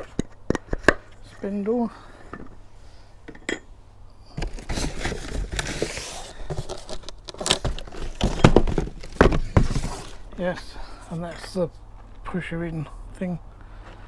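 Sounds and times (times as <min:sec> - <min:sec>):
parts clattering and knocking: 0:00.0 - 0:02.6, 0:03.2 - 0:10.5
packaging rustling: 0:04.4 - 0:10.3.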